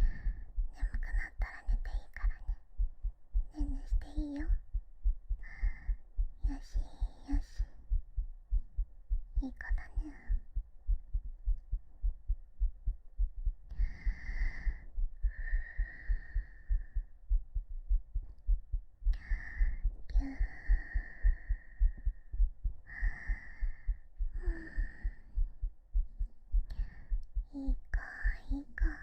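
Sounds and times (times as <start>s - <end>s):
person whispering: 0.0s - 2.6s, 3.4s - 4.6s, 5.4s - 7.8s, 9.4s - 10.5s, 19.1s - 22.0s, 22.9s - 25.4s, 26.7s - 29.0s
heartbeat thumps: 0.0s - 29.0s
soft breaths: 0.0s - 29.0s.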